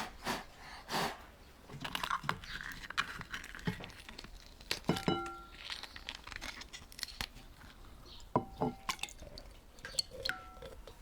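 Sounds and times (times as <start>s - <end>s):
kitchenware clinking: 4.9s - 5.5s.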